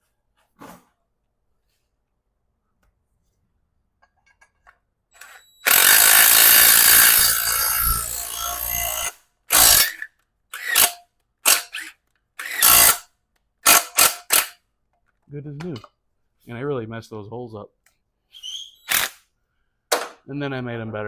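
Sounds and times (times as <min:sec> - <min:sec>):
power drill driving bolt: 0:05.2 - 0:13.0, 0:13.7 - 0:14.6, 0:18.8 - 0:19.2.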